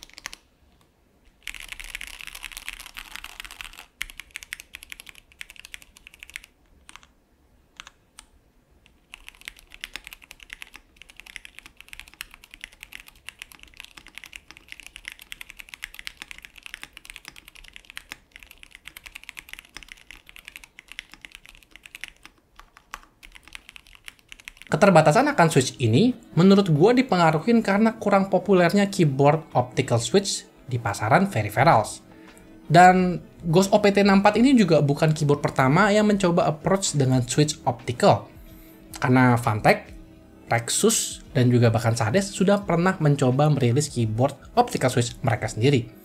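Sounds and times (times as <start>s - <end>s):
keyboard keystroke clacks: 8.9s - 24.7s.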